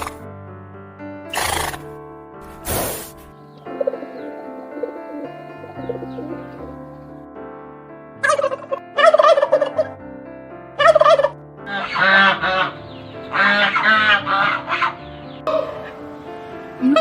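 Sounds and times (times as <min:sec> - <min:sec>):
background music: 0:00.0 - 0:17.0
bird calling loudly: 0:10.8 - 0:17.0.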